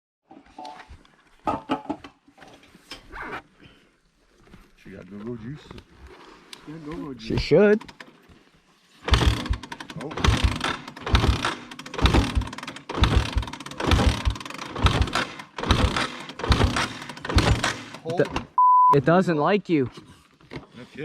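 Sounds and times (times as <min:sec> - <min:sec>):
engine pull-start cranking: 0:07.6 - 0:08.2, 0:09.0 - 0:18.6.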